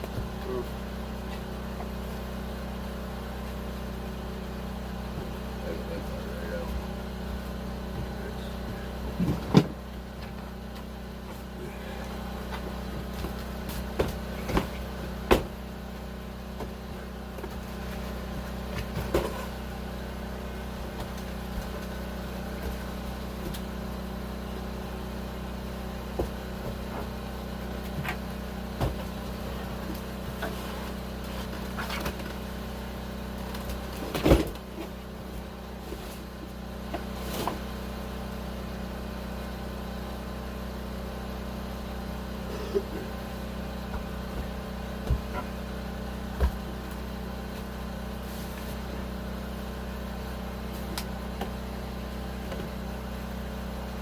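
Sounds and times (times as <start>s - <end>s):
low machine hum: 0.0s - 54.0s
knocks and thumps: 7.9s - 9.8s, 13.0s - 15.6s, 43.9s - 45.6s.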